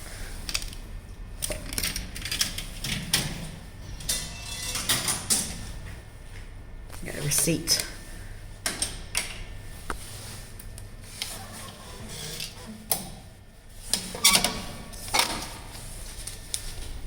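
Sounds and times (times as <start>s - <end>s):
pay machine clicks and mechanical bursts: 1.4s - 5.7s, 11.1s - 13.2s.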